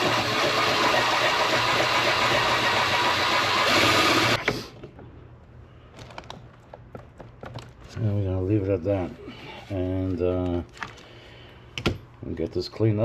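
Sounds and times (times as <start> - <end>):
power drill cutting under load: 0.0 - 4.4.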